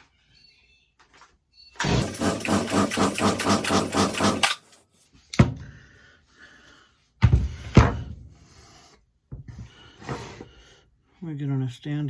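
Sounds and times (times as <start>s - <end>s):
chainsaw recoil starter pulls: 1.8s - 4.7s.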